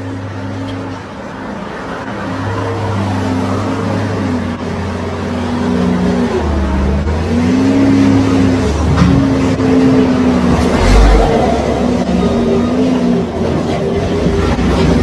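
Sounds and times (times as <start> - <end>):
heavy vehicle engine revving: 5.2 - 15.0.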